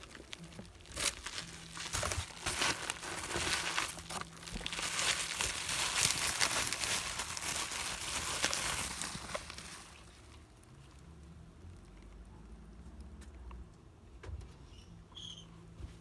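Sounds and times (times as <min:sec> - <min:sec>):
packaging crinkling: 0:00.0 - 0:10.4.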